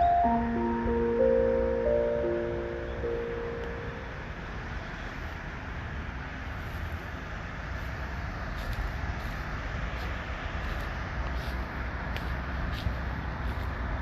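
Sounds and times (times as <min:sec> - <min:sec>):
loudspeaker chime: 0:00.0 - 0:04.4
distant road traffic rumble: 0:00.0 - 0:14.0.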